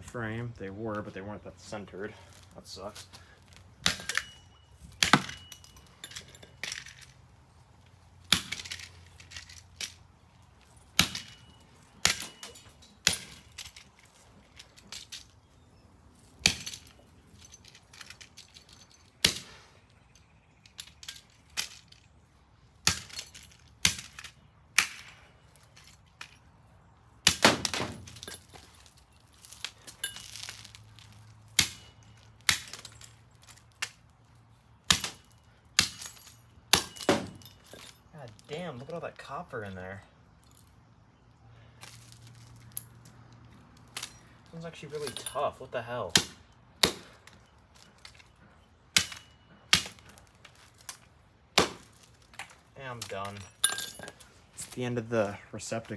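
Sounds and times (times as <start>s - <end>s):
breaking plastic and metal clinks: 0.0s - 55.9s
axe blows smashing receptacle: 27.2s - 28.1s, 46.1s - 47.3s, 51.5s - 52.0s.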